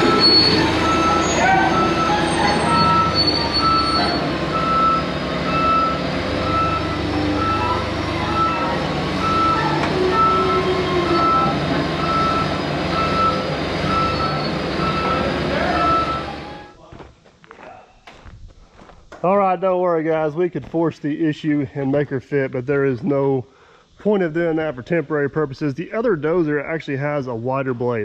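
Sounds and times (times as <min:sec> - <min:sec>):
bulldozer diesel engine running: 0:00.0 - 0:16.7
backup alarm beeping: 0:00.0 - 0:16.8.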